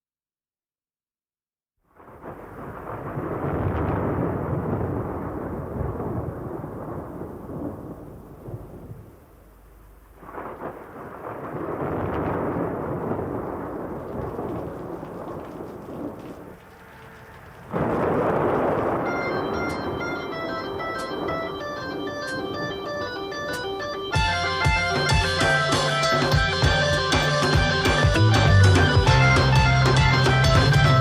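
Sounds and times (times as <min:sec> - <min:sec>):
rain: 0:01.9 - 0:23.1
rolling thunder: 0:02.0 - 0:31.0
organ notes: 0:16.4 - 0:31.0.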